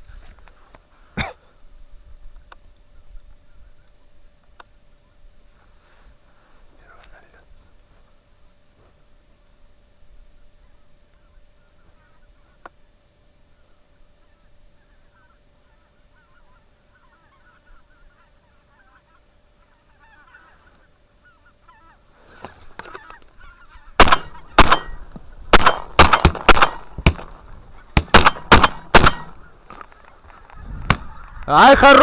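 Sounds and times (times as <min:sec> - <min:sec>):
geese honking: 0:10.3 - 0:26.0, 0:26.6 - 0:32.0
shotgun shots: 0:24.0 - 0:27.4, 0:28.0 - 0:29.4.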